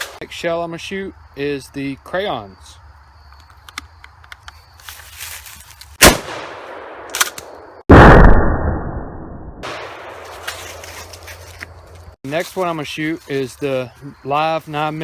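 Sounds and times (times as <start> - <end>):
shotgun blasts: 6.0 - 8.8, 9.6 - 10.5.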